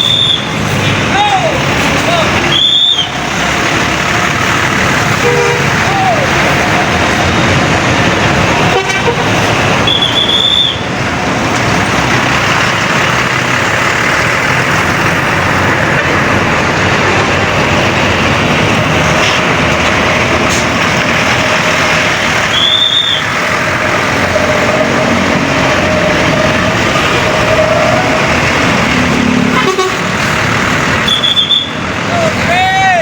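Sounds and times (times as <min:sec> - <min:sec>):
bus engine and road noise: 0:00.0 - 0:33.0.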